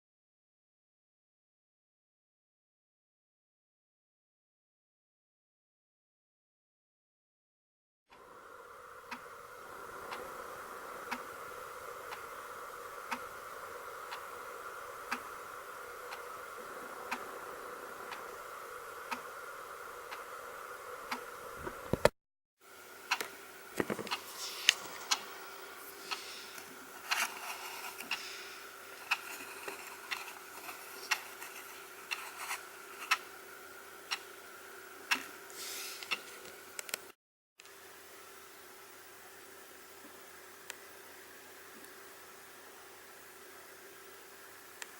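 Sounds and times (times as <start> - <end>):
alarm clock ticking: 10.1 - 21.4
irregular clicks and scraping: 25.9 - 33.2.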